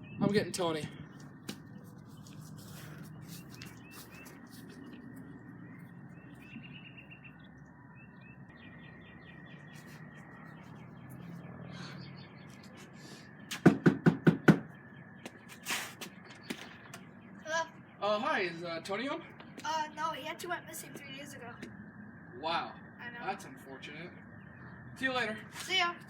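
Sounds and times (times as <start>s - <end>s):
birds chirping faintly: 0.0s - 26.0s
knocks on a door: 13.6s - 14.7s.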